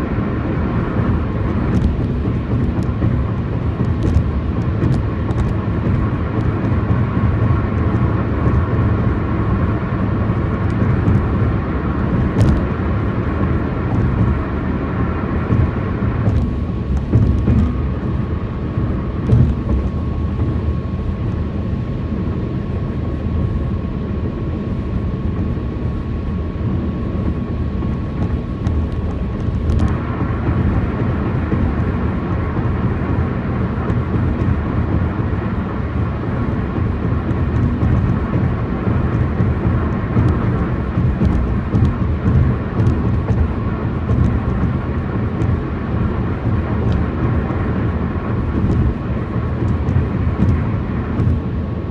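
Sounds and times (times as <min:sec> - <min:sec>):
tyre roar on concrete: 0:00.0 - 0:20.6, 0:27.8 - 0:51.9
knocks from bumps: 0:15.5 - 0:18.0, 0:19.2 - 0:20.0, 0:36.8 - 0:44.8.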